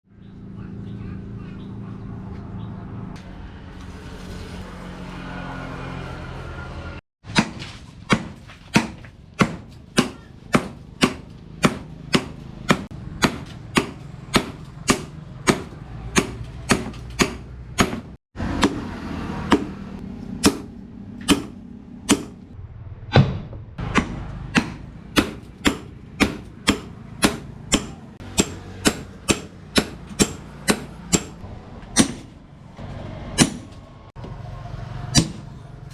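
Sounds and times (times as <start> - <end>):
hammer striking steel on anvil: 7.3 - 22.4, 23.9 - 31.4, 32.0 - 32.3, 33.4 - 33.8, 35.1 - 35.4.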